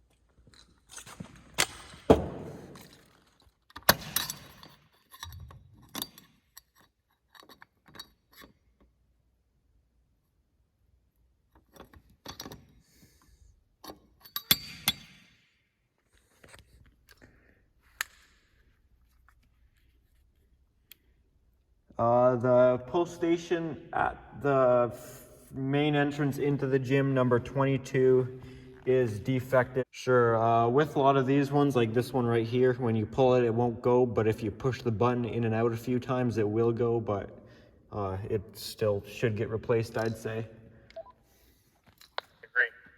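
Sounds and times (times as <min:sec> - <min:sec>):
metal clicks and clanks: 0:01.6 - 0:09.0, 0:11.5 - 0:12.8.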